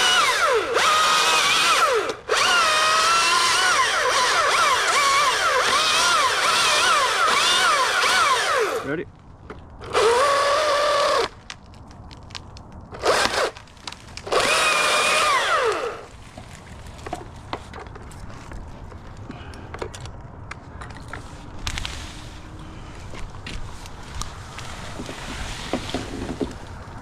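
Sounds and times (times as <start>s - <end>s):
chainsaw revving: 0.0s - 8.9s, 14.3s - 16.1s.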